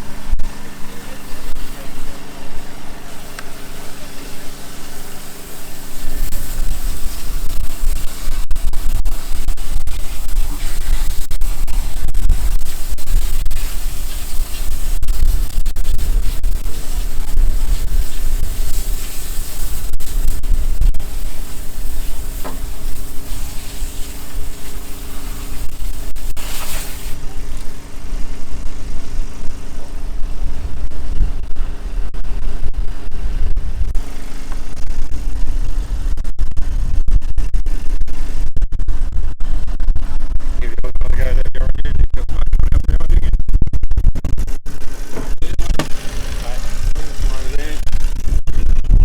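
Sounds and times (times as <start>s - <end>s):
loud hiss: 0.0s - 38.4s, 44.5s - 49.0s
engine running: 0.0s - 42.9s, 44.0s - 49.0s
rumbling buffeting on microphone: 0.0s - 49.0s.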